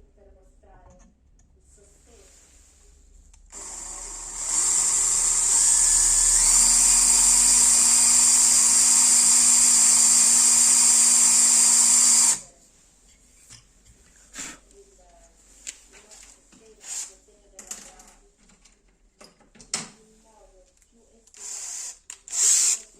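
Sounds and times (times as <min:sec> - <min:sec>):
electric drill motor whining: 0:03.5 - 0:12.4, 0:21.4 - 0:22.9.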